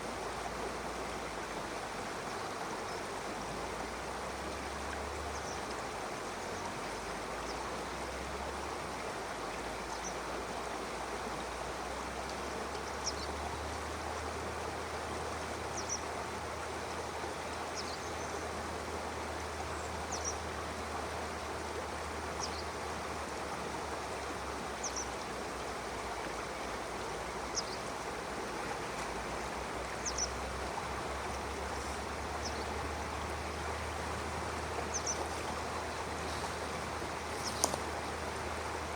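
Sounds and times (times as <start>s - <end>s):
stream flowing: 0.0s - 38.9s
bird chirping: 34.8s - 37.8s.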